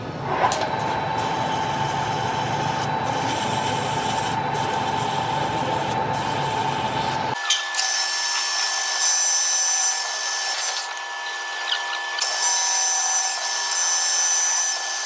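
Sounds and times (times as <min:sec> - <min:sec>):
lathe tool scraping: 0:00.3 - 0:07.4.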